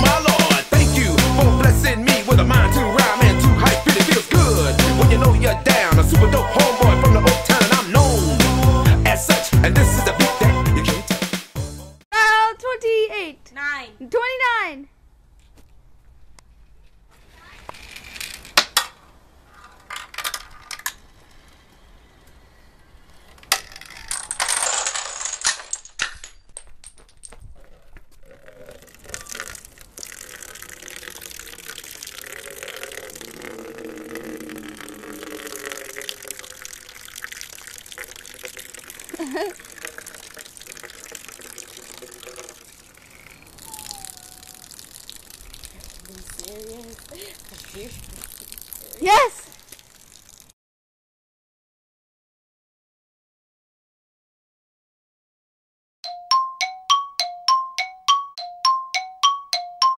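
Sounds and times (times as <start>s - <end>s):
objects knocking and falling: 23.4s - 27.6s.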